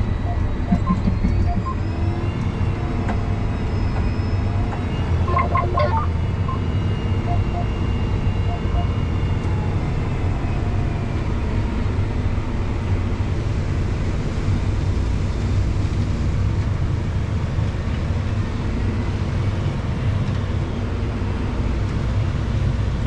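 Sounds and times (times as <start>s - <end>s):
tractor diesel engine running: 0.0s - 2.4s.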